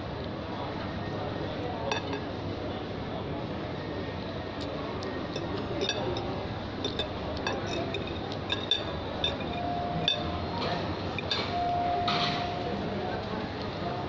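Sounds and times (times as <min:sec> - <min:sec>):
tableware clinking: 0:01.8 - 0:02.4, 0:05.2 - 0:12.7.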